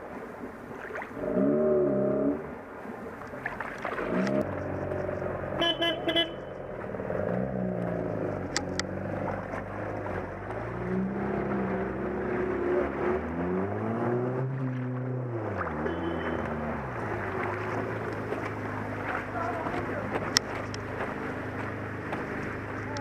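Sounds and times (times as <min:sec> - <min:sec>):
engine revving: 0:03.8 - 0:23.0
car horn toots: 0:05.6 - 0:06.6, 0:15.8 - 0:16.6.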